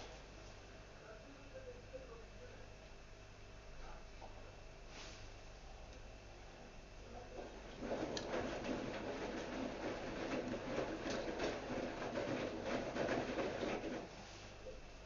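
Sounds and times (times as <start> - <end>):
washing machine low hum: 0.0 - 15.0
washing machine churning: 6.2 - 15.0.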